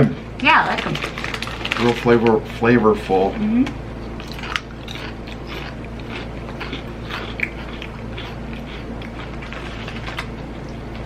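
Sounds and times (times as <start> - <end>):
low steady hum: 0.0 - 11.0
person chewing crunchy chips: 1.0 - 2.2, 4.0 - 11.0.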